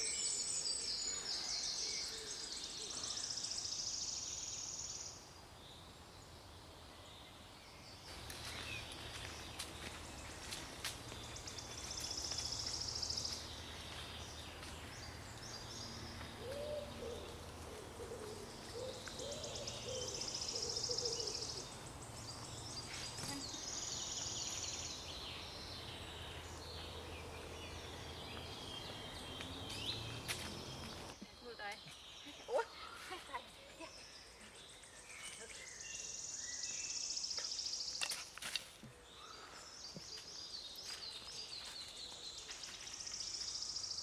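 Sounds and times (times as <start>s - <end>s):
birds singing high trills: 8.1s - 31.2s
lower-pitched bird calls: 8.1s - 31.2s.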